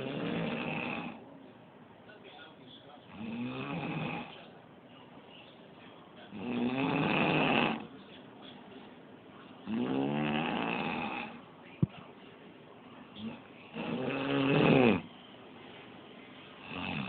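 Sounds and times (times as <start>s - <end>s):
man snoring: 0.0s - 1.2s, 3.1s - 4.3s, 6.3s - 7.9s, 9.7s - 11.4s, 13.2s - 15.1s, 16.6s - 17.0s.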